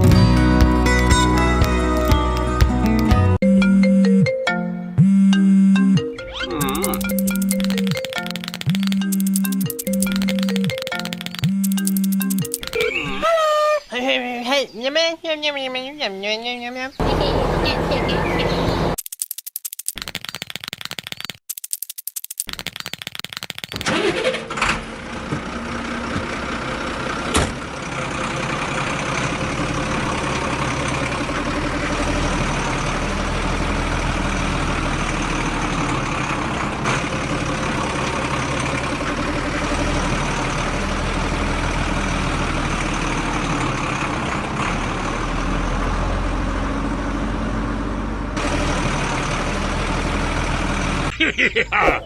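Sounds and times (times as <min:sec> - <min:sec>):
sharp clicks: 0:06.6 - 0:13.0, 0:19.0 - 0:24.0.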